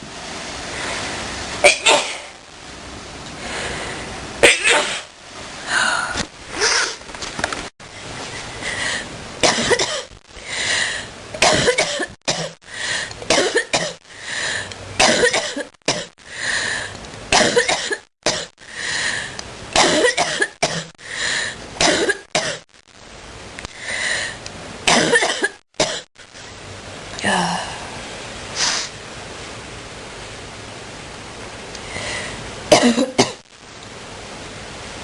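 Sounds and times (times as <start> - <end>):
person coughing: 1.6 - 2.4, 4.4 - 5.1, 9.4 - 10.1, 11.4 - 12.6, 15.0 - 16.1, 17.3 - 18.5, 19.8 - 20.9, 21.8 - 22.6, 24.9 - 26.1, 32.7 - 33.4.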